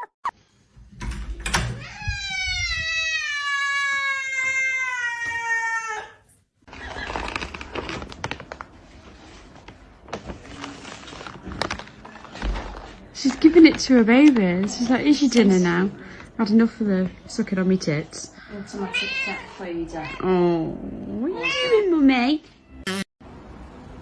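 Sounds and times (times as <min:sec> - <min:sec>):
cat meowing: 0:01.8 - 0:06.2, 0:18.7 - 0:20.4
rustling: 0:06.7 - 0:17.5.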